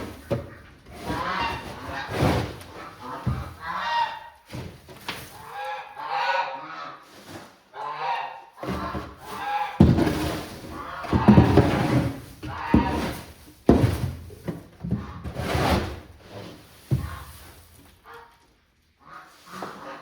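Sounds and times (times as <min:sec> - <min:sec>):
scraping: 0:00.0 - 0:03.8, 0:08.6 - 0:18.0
heavy thumps against wood: 0:09.8 - 0:15.2.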